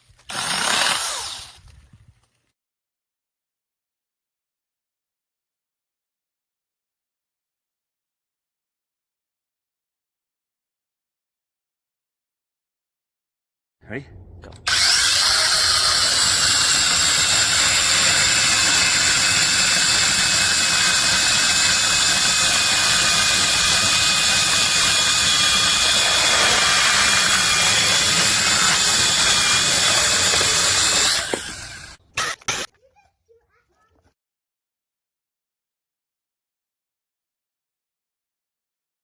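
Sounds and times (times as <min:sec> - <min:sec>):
mini chainsaw whirring: 0:00.2 - 0:01.7, 0:14.7 - 0:32.7.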